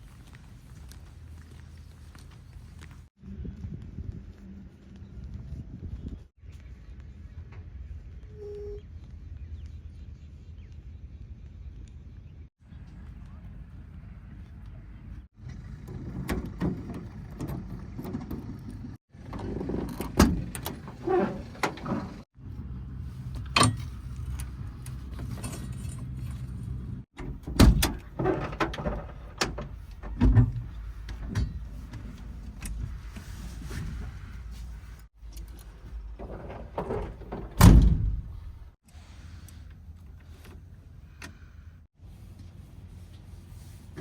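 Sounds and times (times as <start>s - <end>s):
loud metallic clanks and thuds: 27.2s - 31.7s, 36.1s - 38.7s.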